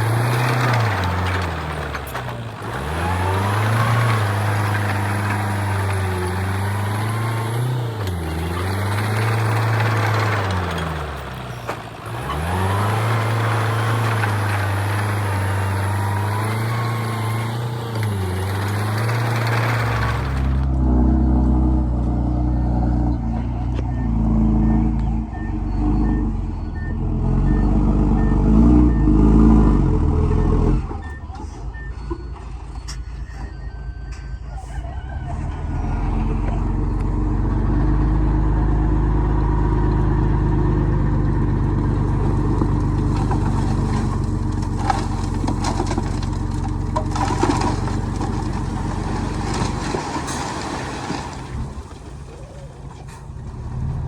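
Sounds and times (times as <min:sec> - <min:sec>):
diesel machinery running: 0:00.0 - 0:54.0
reversing alarm beeping: 0:22.3 - 0:36.1.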